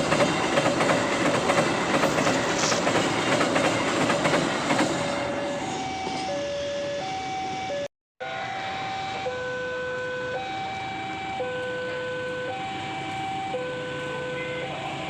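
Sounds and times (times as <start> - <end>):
level crossing two-tone alarm: 5.1 - 15.0.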